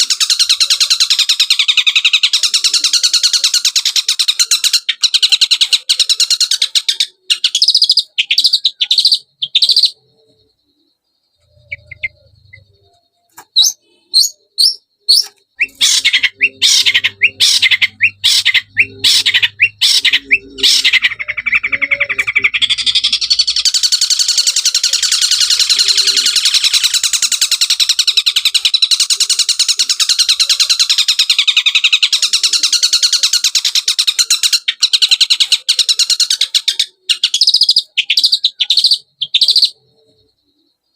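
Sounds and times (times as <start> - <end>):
bird chirps: 0.0 - 40.9
dense buzzy bird trill: 0.0 - 40.9
loud repeated bird notes: 0.0 - 40.9.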